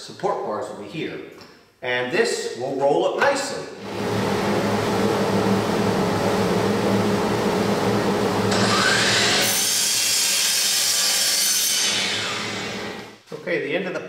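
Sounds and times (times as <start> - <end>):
power tool motor hum: 7.0 - 13.2.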